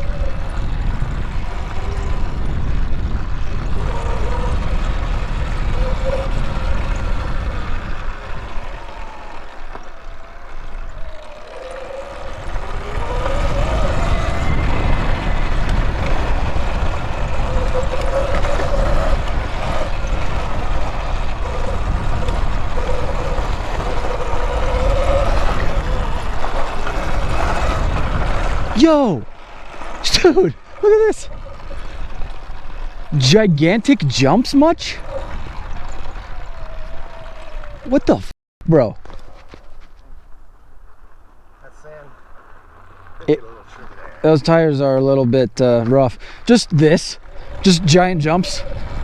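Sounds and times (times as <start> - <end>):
electric motor whine: 0.0 - 33.2
wind buffeting microphone: 0.0 - 38.3, 39.0 - 49.0.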